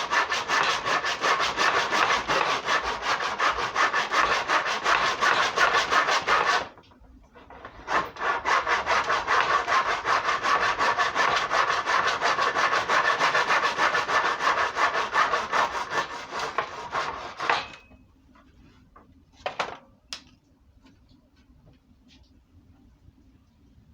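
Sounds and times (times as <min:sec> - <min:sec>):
hand saw cutting: 0:00.0 - 0:06.8, 0:07.8 - 0:17.7.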